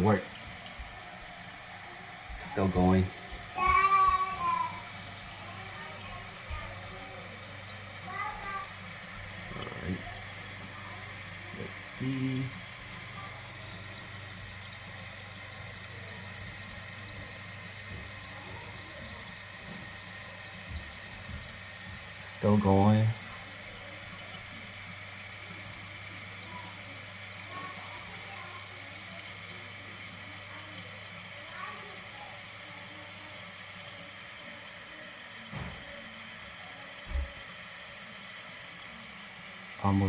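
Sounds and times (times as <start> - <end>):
toilet tank refilling with water: 0.0 - 40.0.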